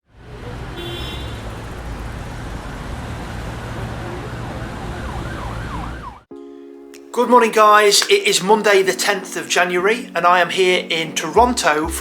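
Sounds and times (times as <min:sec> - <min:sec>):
city traffic with engine rumble: 0:00.0 - 0:06.3
siren yelping: 0:03.8 - 0:06.3.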